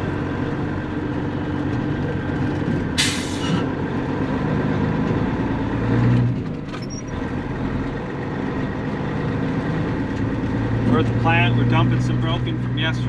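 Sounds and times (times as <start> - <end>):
diesel truck engine running: 0.0 - 13.0
air hiss: 3.0 - 3.6.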